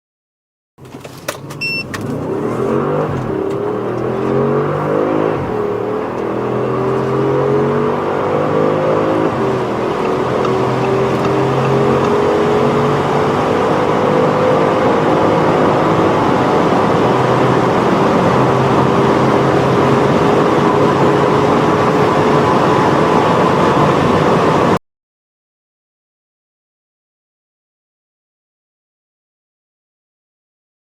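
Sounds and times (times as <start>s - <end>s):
car engine pulling hard: 0.8s - 24.8s
road and wind noise: 0.8s - 24.8s.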